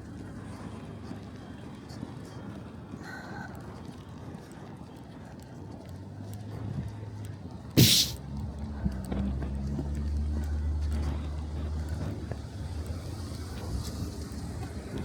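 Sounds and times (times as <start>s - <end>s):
air hiss: 7.8s - 8.2s.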